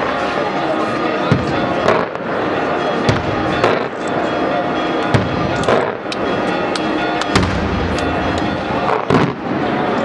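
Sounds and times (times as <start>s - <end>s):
music: 0.6s - 10.0s
fireworks bangs and cracks: 1.2s - 2.4s, 3.0s - 4.1s, 5.1s - 6.0s, 7.2s - 9.8s.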